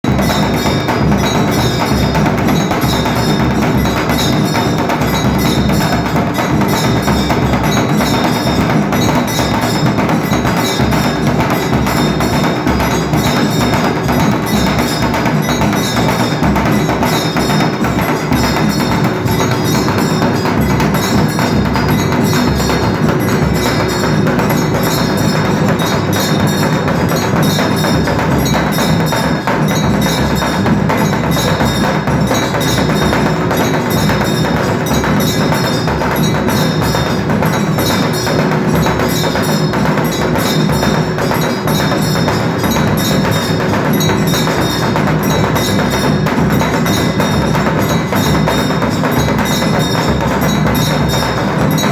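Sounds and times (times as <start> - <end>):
drum beating: 0.0 - 51.9
ringing metal bells: 0.0 - 51.9.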